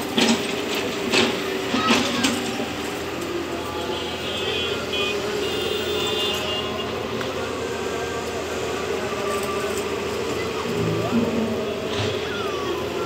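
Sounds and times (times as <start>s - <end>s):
excavator engine running: 0.0s - 13.0s
high-pitched whine: 7.4s - 13.0s.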